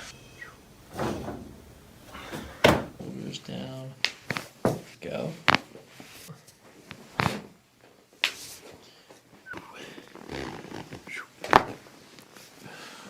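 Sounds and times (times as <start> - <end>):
joints cracking: 0.4 - 3.0.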